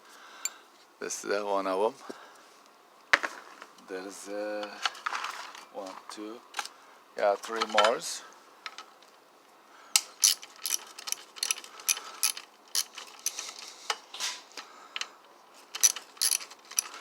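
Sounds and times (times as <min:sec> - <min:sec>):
hand tool clicking: 0:10.2 - 0:13.4, 0:15.8 - 0:17.0.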